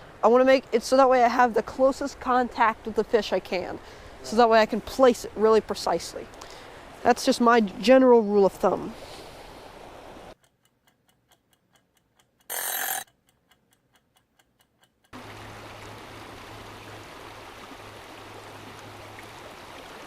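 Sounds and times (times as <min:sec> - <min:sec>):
clock ticking: 0:10.4 - 0:15.2
mountain stream rushing: 0:15.2 - 0:20.0.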